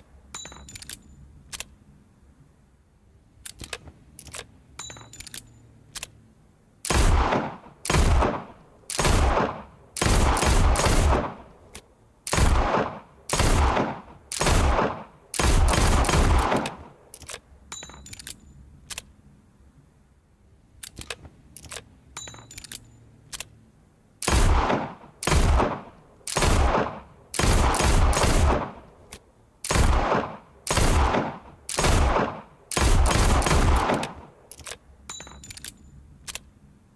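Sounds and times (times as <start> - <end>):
revolver gunshots echoing: 6.9 - 11.6, 12.3 - 17.0, 24.2 - 28.9, 29.7 - 34.4.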